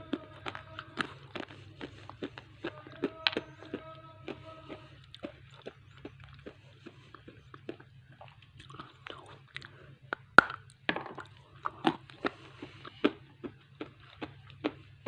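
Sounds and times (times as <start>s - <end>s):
chewing and biting clay: 0.0s - 15.0s.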